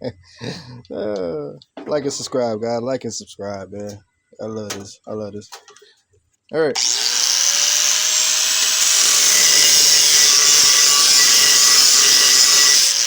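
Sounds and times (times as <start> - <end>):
angle grinder cutting steel: 6.8 - 13.0.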